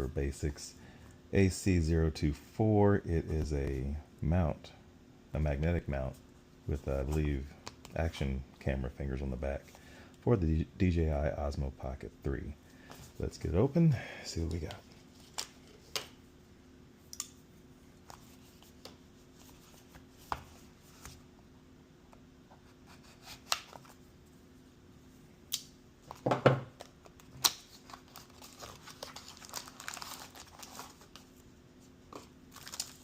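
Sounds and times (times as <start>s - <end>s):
plastic wrapping crinkling: 27.2s - 31.4s, 32.5s - 33.0s.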